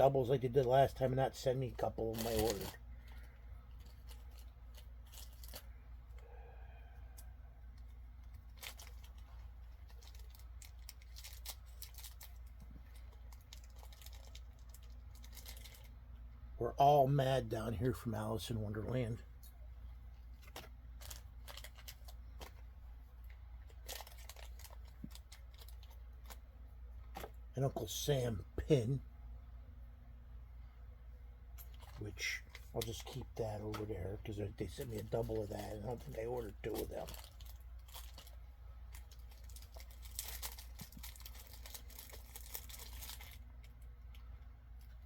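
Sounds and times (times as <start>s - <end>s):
steady low hum: 0.0s - 45.0s
packaging rustling: 1.8s - 5.7s, 7.8s - 15.9s, 20.3s - 22.6s, 23.6s - 26.4s, 34.6s - 44.2s.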